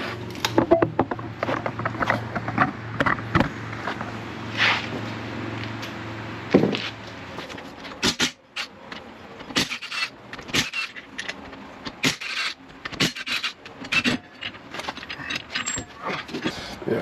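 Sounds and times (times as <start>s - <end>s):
hand tools and car parts knocking: 0.4s - 4.0s.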